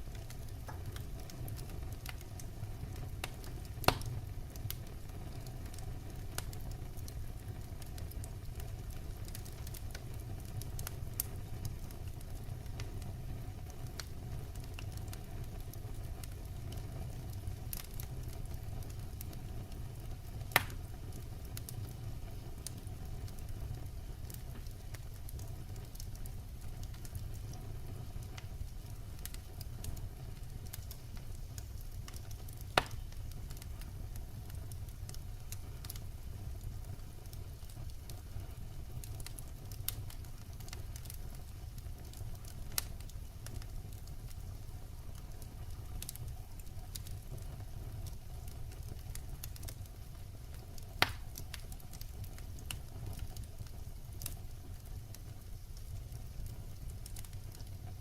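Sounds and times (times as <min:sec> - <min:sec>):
firewood burning and crackling: 0:00.0 - 0:58.0
sharp pop of fire: 0:03.8 - 0:04.1, 0:20.6 - 0:20.8, 0:32.8 - 0:33.0, 0:51.0 - 0:51.3.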